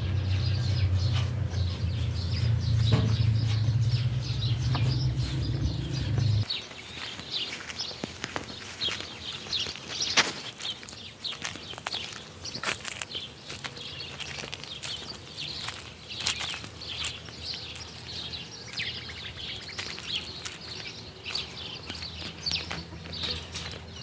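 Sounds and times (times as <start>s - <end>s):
faint low hum: 0.0s - 6.4s
small birds chirping: 0.0s - 24.0s.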